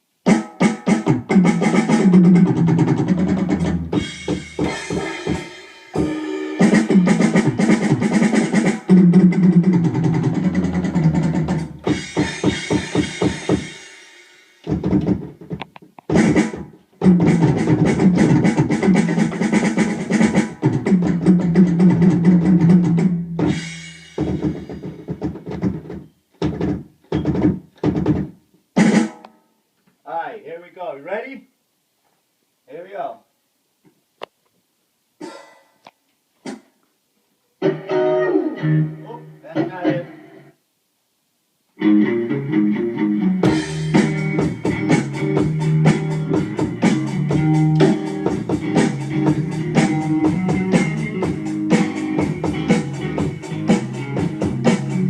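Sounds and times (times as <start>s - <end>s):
drum kit playing rhythm: 0.2s - 29.4s, 35.2s - 35.7s, 36.4s - 36.8s, 43.1s - 55.0s.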